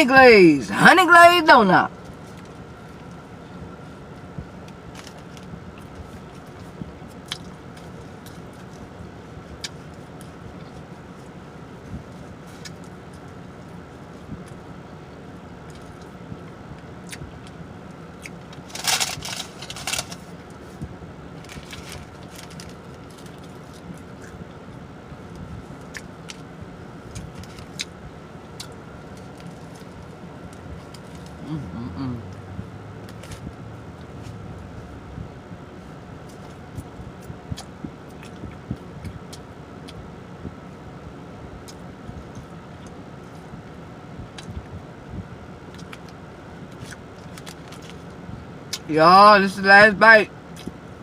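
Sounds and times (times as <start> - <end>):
steady low hum: 0.0 - 51.0
chewing with wet mouth smacks: 36.3 - 40.0
chewing and mouth clicks: 37.2 - 40.0, 45.7 - 48.0.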